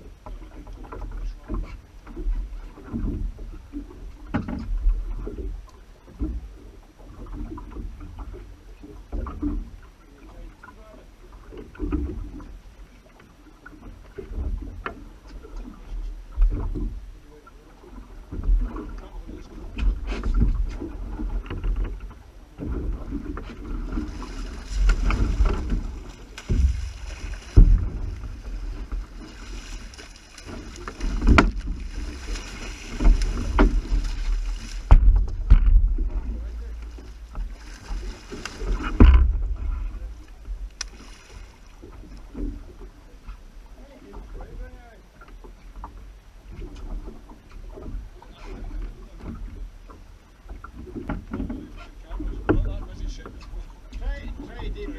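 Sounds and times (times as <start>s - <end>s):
water sloshing: 0.0s - 54.9s
wind rumble on microphone: 18.0s - 41.0s
sharp knocks: 26.4s - 28.2s, 31.0s - 31.9s, 34.8s - 36.2s, 38.8s - 39.6s.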